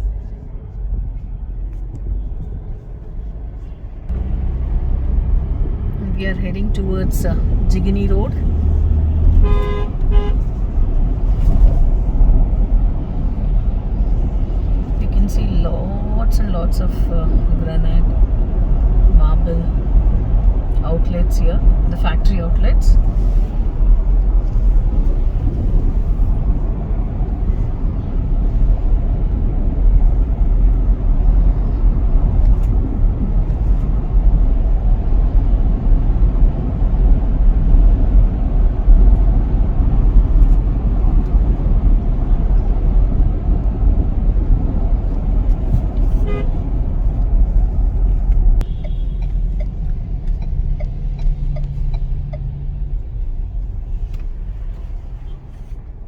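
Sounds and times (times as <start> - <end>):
car interior road rumble: 0.0 - 56.0
car horn toot: 9.3 - 10.6, 46.2 - 46.7, 48.6 - 49.4.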